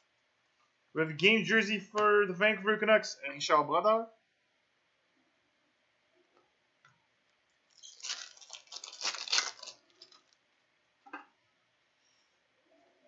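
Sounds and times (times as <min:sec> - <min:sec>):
wrapper tearing and crinkling: 0:07.7 - 0:10.4.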